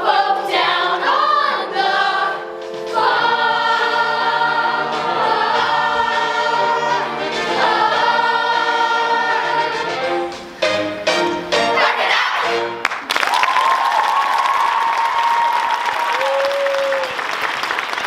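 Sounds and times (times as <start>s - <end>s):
musical accompaniment: 0.0s - 13.1s.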